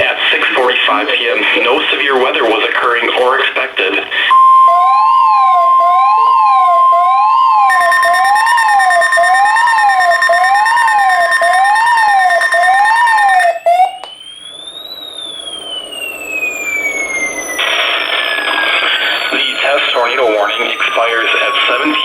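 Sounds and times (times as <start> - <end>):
steady alert tone: 4.3 - 14.0
higher steady tone: 4.3 - 21.3
rising and falling tone: 4.3 - 22.0
warbling siren tone: 4.3 - 22.0.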